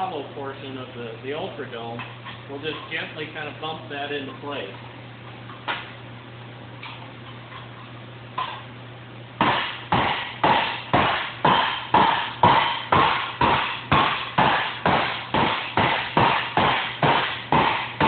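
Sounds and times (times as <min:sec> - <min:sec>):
hammer striking sheet metal: 0:09.4 - 0:18.0.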